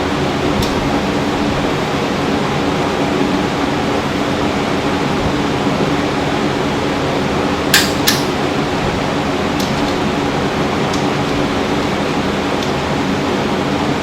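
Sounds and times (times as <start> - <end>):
fan-like hum and hiss: 0.0 - 14.0
sharp metallic clicks: 7.7 - 8.4.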